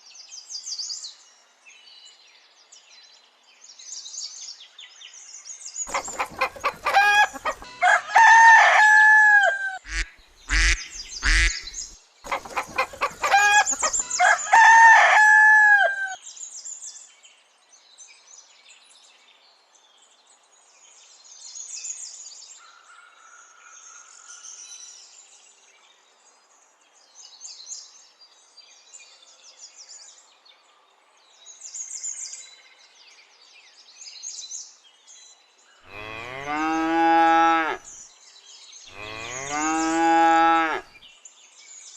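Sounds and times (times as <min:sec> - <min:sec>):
small birds chirping: 0:05.8 - 0:07.8, 0:09.8 - 0:14.5
rooster crowing: 0:05.9 - 0:10.0, 0:12.3 - 0:16.2, 0:35.9 - 0:37.8, 0:38.9 - 0:40.9.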